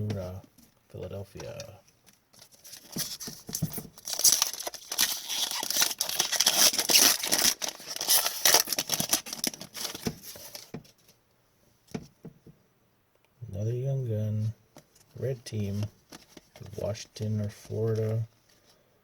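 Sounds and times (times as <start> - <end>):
foil wrapper tearing and crinkling: 2.6 - 10.7.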